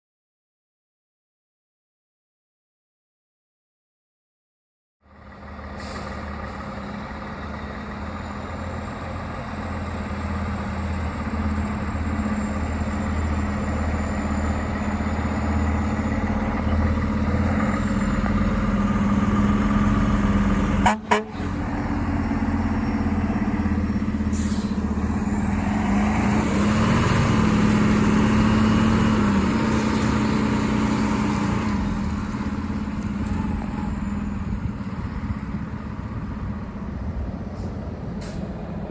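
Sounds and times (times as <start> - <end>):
truck engine: 5.0 - 38.9
fire truck air horn blasts: 20.8 - 21.5.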